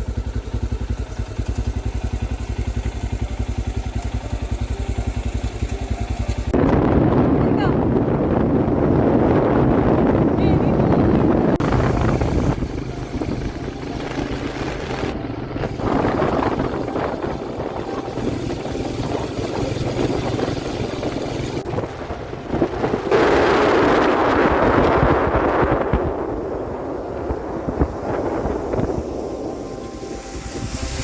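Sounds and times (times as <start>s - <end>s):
vehicle engine hum: 0.0s - 31.0s
wind rushing over microphone: 6.5s - 31.0s.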